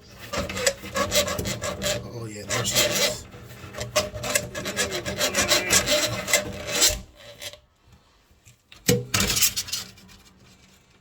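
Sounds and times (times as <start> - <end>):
rough scraping strokes: 0.0 - 7.6.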